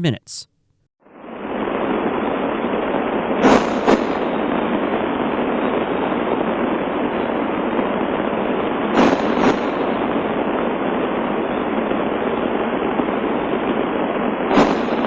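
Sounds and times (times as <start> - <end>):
loud pops: 14.5 - 15.0.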